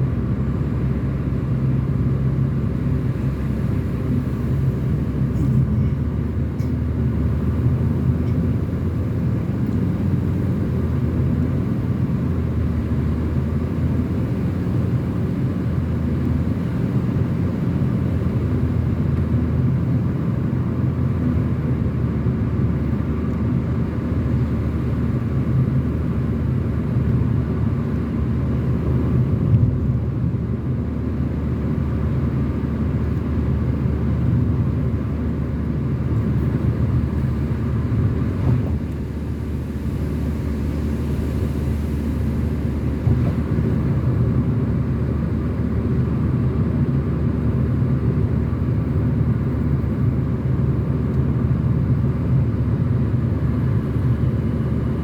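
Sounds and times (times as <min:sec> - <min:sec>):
car engine rumble: 0:00.0 - 0:55.0
tyre road noise: 0:00.0 - 0:55.0.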